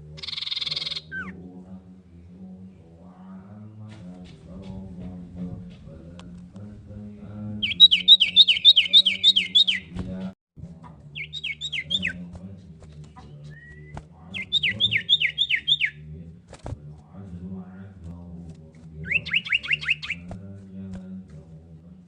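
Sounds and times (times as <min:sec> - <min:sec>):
bird whistling falling notes: 0:07.6 - 0:09.9, 0:13.5 - 0:16.0, 0:19.0 - 0:20.3.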